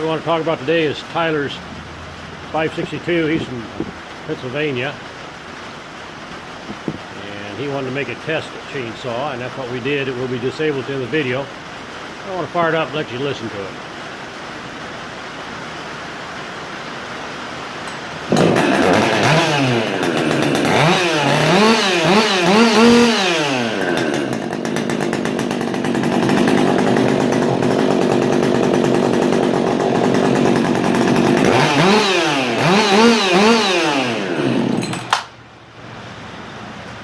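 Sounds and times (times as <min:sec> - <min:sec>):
chainsaw revving: 0:17.9 - 0:35.3.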